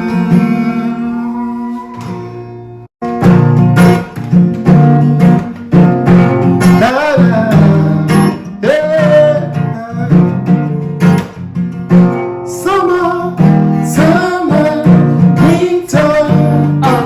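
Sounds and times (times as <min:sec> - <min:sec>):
acoustic guitar strumming: 0:00.0 - 0:17.0
person singing: 0:06.6 - 0:10.4, 0:12.5 - 0:17.0.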